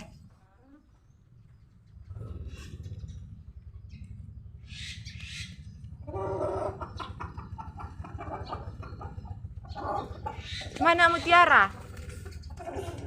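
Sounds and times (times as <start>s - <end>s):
chicken clucking: 6.0s - 10.8s.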